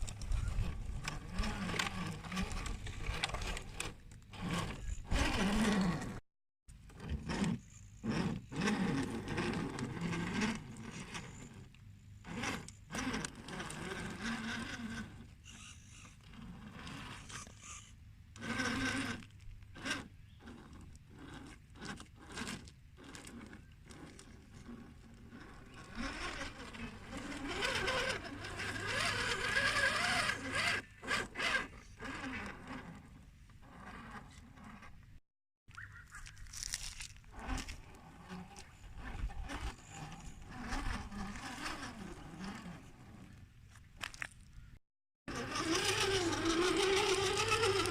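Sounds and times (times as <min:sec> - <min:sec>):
electric motor and gears whining: 0:00.0 - 0:44.4, 0:45.3 - 0:47.9
tyres crunching on stone: 0:36.0 - 0:37.8.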